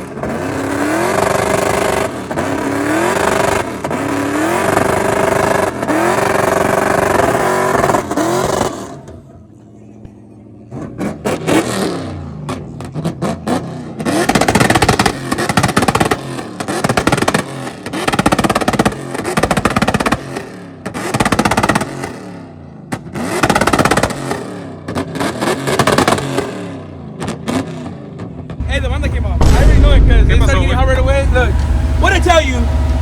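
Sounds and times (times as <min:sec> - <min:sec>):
truck engine revving: 0:00.0 - 0:09.2, 0:28.6 - 0:33.0
exhaust pops: 0:28.6 - 0:33.0.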